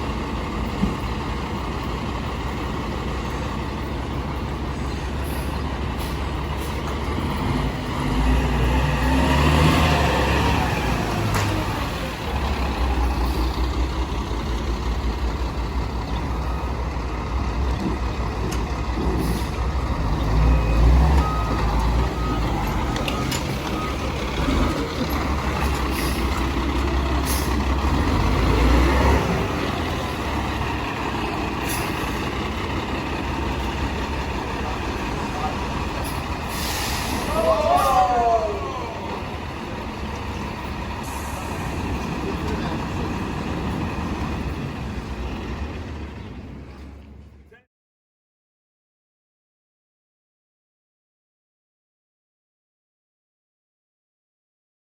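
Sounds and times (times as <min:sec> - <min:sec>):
diesel engine revving: 0:00.0 - 0:47.4
reversing beeps: 0:19.4 - 0:25.2
air brake hisses: 0:36.1 - 0:37.4.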